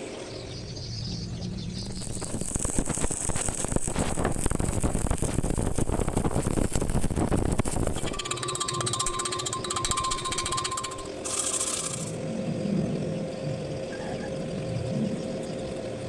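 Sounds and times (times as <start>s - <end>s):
welding arc crackling: 0.6s - 12.2s
rapid even ticking: 1.7s - 12.2s.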